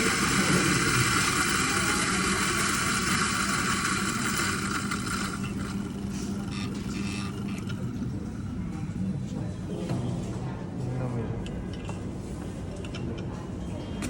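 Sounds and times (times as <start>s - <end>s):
coffee grinder motor whirring: 0.0s - 8.7s.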